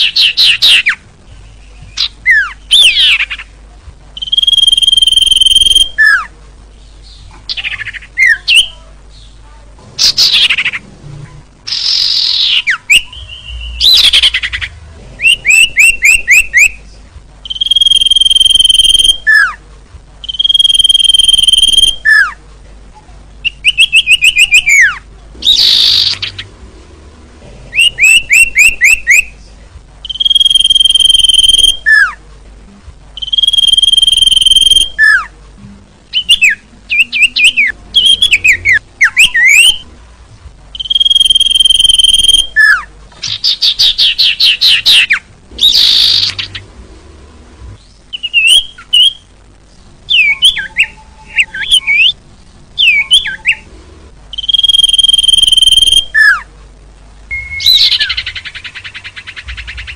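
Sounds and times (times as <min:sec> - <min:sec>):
bird-lure call chirps and whistles: 0:04.2 - 0:06.2, 0:17.5 - 0:19.5, 0:20.2 - 0:22.3, 0:30.1 - 0:32.1, 0:33.2 - 0:35.2, 0:40.8 - 0:42.8, 0:43.4 - 0:46.5, 0:54.4 - 0:56.4, 0:57.3 - 0:59.9.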